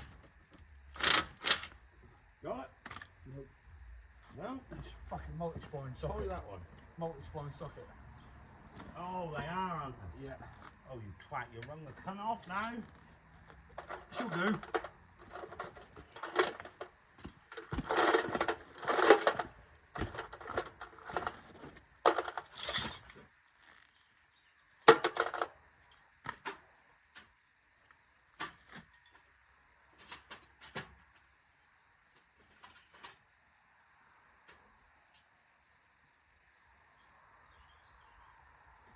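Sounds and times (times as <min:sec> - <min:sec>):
metal tools clinking and rattling: 0:00.9 - 0:01.8, 0:12.3 - 0:13.0, 0:13.7 - 0:16.9, 0:17.5 - 0:23.2, 0:24.9 - 0:26.1.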